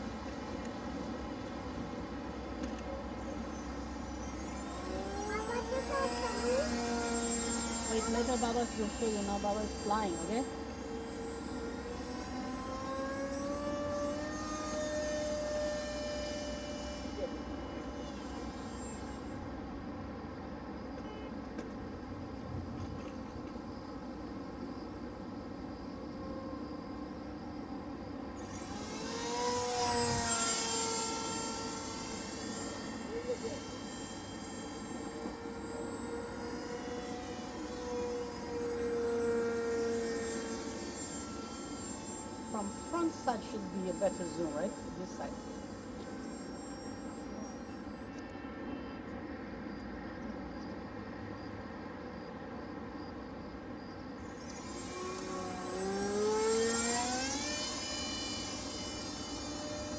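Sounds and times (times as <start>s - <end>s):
electric motor and propeller whining: 0.0s - 59.9s.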